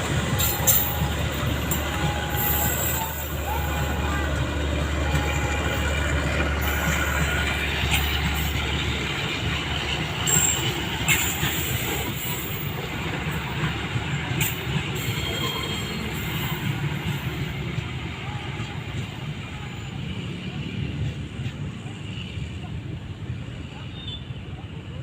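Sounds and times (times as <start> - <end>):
train wheels rumbling on rail: 0.0 - 25.0
clacks at rail joints: 6.1 - 17.9
wheel squeal: 10.2 - 12.5.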